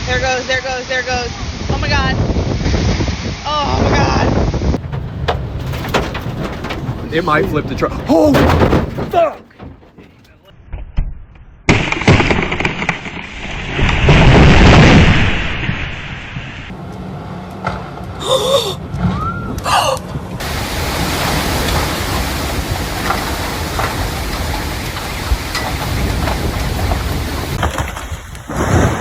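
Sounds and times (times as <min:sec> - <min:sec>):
storm wind buffeting microphone: 0:00.1 - 0:09.2, 0:20.4 - 0:29.0
rain: 0:20.4 - 0:29.0.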